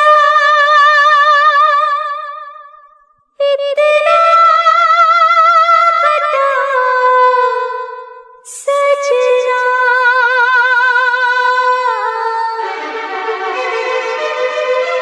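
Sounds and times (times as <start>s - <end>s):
music with long held notes: 11.4s - 15.0s.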